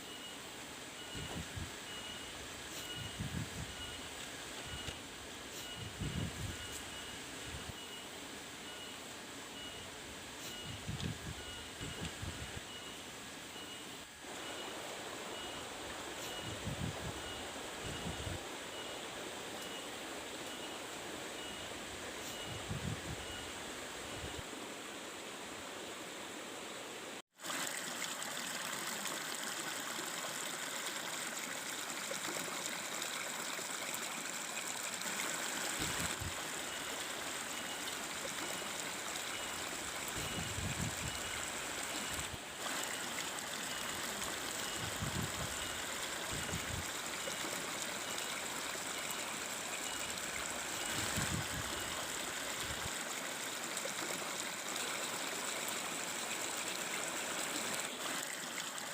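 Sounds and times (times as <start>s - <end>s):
stream water flowing: 13.0s - 58.9s.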